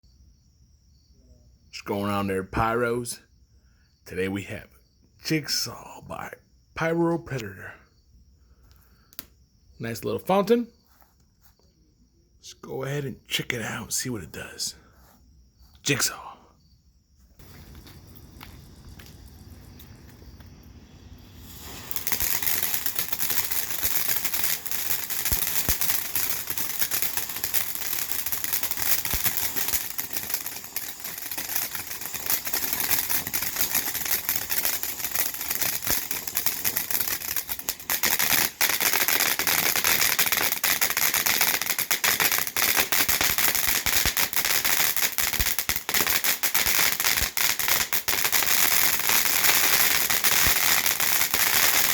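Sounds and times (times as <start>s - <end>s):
firework crackling: 17.4s - 51.9s.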